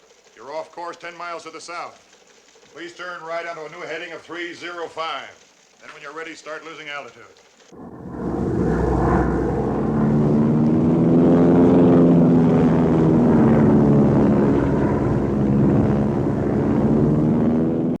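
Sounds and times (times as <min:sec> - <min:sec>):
propeller engines droning: 0:07.7 - 0:18.0.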